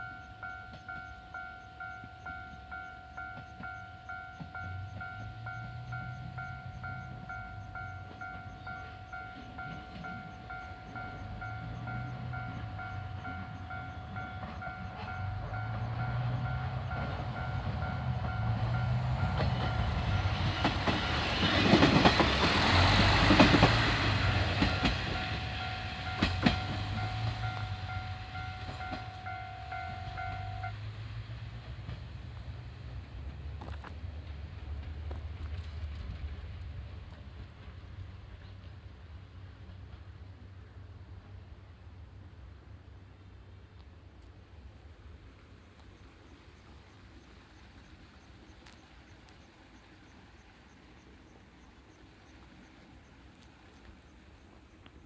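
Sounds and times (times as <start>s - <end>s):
level crossing warning bell: 0.0s - 30.9s
railcar engine and wheel noise: 0.0s - 55.0s.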